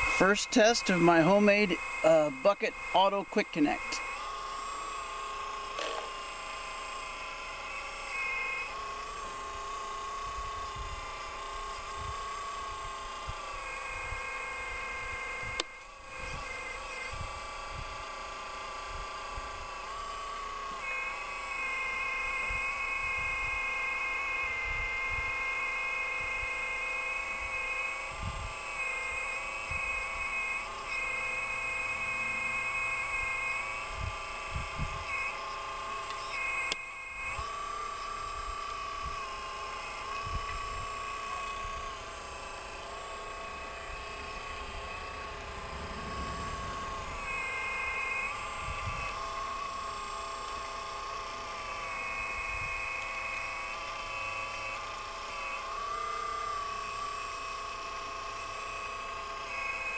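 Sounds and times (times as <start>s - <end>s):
toy excavator motor whining: 0.0s - 59.9s
low thumps: 45.0s - 48.2s.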